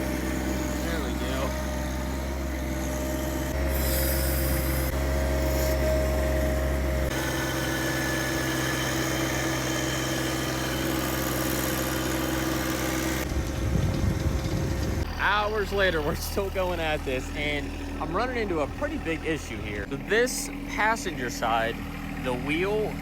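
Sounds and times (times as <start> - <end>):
tractor diesel engine running: 0.0 - 23.0.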